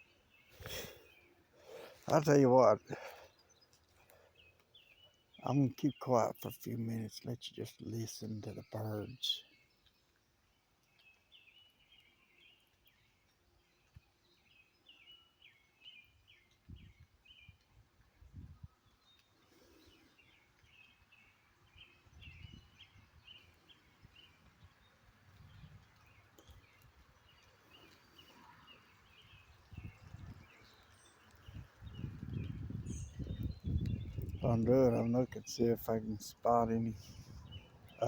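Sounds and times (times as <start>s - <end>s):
songbirds chirping: 0.0s - 38.0s.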